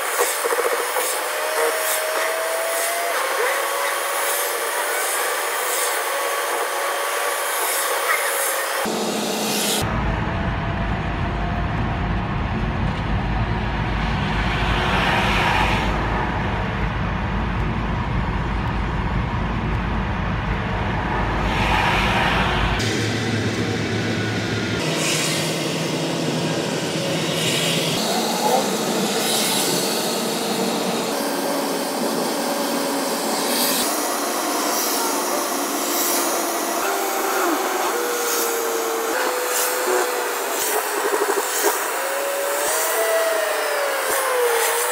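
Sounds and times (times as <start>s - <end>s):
car road and engine noise: 0.0s - 44.9s
heavy low rumble: 9.8s - 27.5s.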